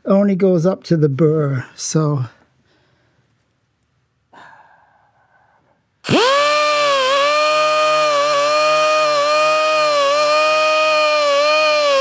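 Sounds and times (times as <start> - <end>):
rotary tool grinding: 6.0 - 12.0.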